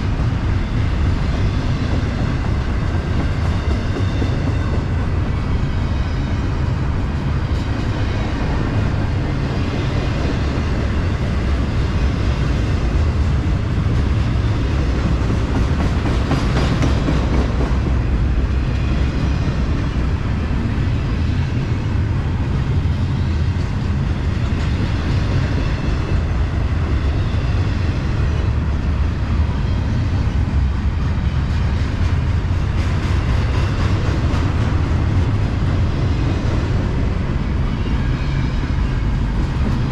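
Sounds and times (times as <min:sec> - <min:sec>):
freight train rumbling past: 0:00.0 - 0:39.9.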